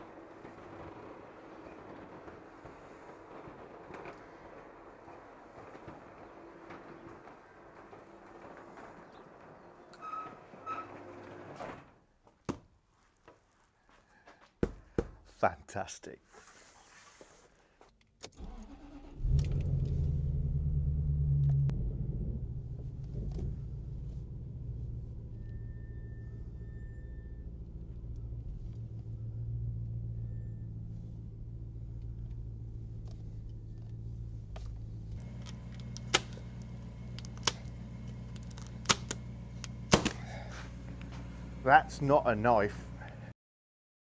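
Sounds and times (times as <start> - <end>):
engine starting and idling: 18.4 - 41.1
sharp clicks: 35.4 - 40.2.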